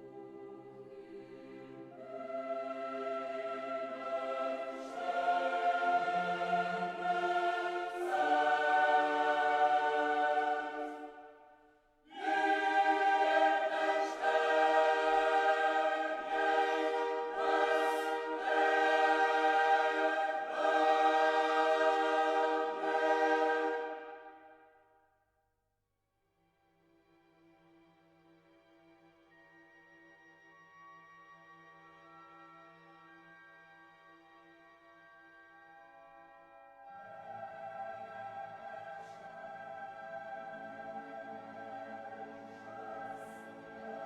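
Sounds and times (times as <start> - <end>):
choir-like sustained chords: 0.0 - 24.8, 36.7 - 44.0.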